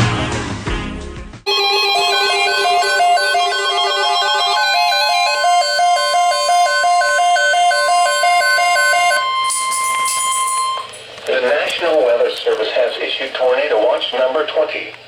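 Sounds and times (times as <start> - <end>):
two-note electronic jingle: 1.5 - 11.0
steady high attention tone: 1.5 - 11.8.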